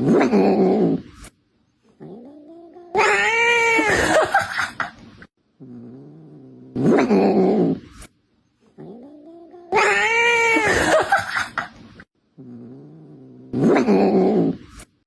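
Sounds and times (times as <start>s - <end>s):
cat growling: 0.0s - 1.2s, 1.9s - 4.3s, 5.6s - 8.0s, 8.7s - 11.1s, 12.4s - 14.8s
cat yowling: 2.6s - 4.2s, 9.4s - 10.9s.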